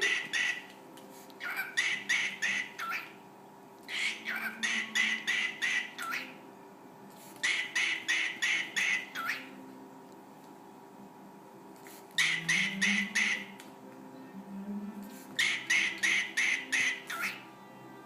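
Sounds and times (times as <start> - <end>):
cockatiel calling harshly: 0.0 - 0.7, 1.4 - 3.2, 3.9 - 6.3, 7.4 - 9.5, 12.2 - 13.6, 15.4 - 17.4.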